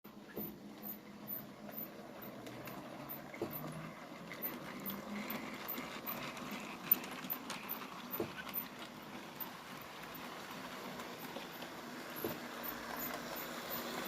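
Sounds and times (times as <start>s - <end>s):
locomotive running: 0.1s - 14.0s.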